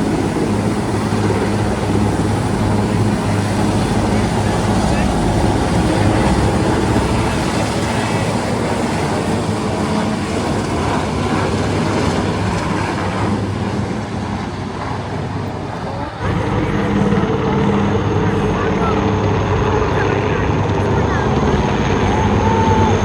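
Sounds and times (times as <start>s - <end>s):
loud engine noise: 0.0s - 23.0s.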